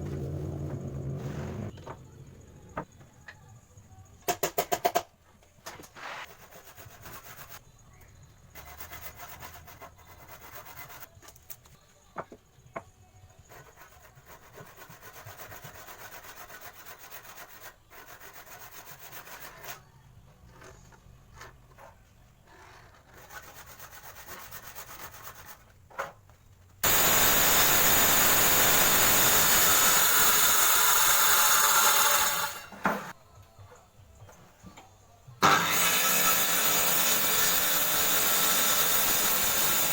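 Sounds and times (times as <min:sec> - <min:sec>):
table saw cutting wood: 0:26.8 - 0:33.1, 0:35.4 - 0:39.9.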